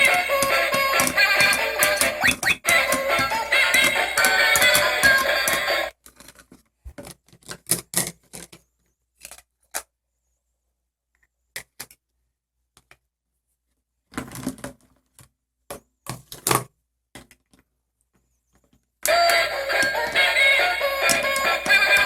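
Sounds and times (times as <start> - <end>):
plastic toy pieces clicking: 0.0 - 6.5, 19.1 - 22.0.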